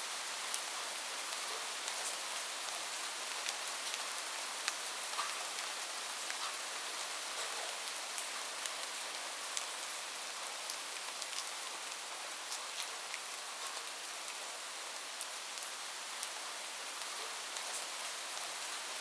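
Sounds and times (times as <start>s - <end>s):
steady rain hissing: 0.0s - 19.0s
raindrops ticking on a surface: 0.4s - 19.0s.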